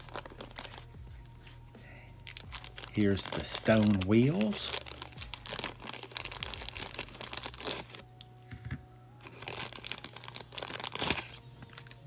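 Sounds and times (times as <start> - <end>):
packaging crinkling and rustling: 0.0 - 0.9, 2.2 - 8.1, 9.2 - 12.0.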